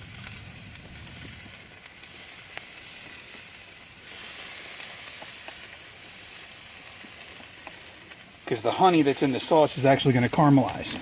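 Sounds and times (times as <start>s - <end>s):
chicken sizzling on grill: 0.0s - 11.0s
small pops: 4.8s - 6.1s, 7.0s - 8.3s.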